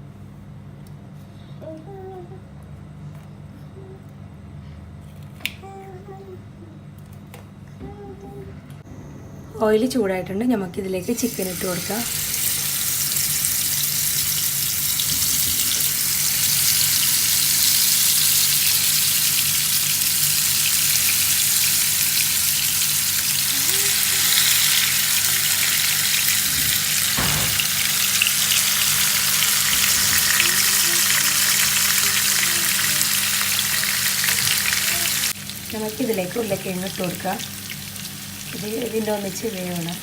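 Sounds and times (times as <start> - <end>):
chicken frying in oil: 11.2 - 40.0
brief knock: 27.2 - 27.8.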